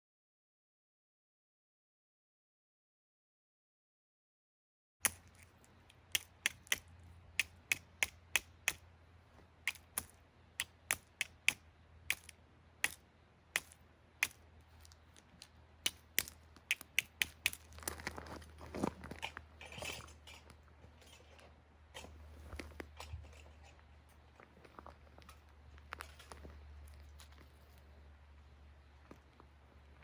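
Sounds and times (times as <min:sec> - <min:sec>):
wood fire crackling: 0:05.0 - 0:28.4
soft rustling: 0:17.6 - 0:28.1.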